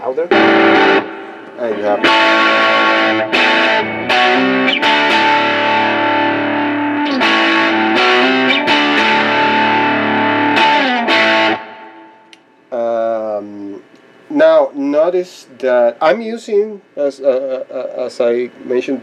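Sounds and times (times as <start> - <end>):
distorted electric guitar riff: 0.0 - 12.4.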